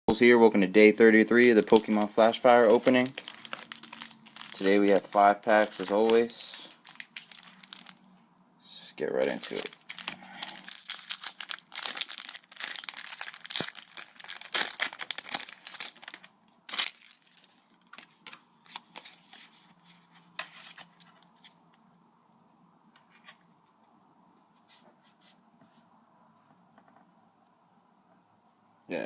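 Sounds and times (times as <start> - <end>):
cards being handled: 1.4 - 7.9, 9.2 - 21.6
foil wrapper tearing and crinkling: 1.4 - 8.0, 9.2 - 19.4.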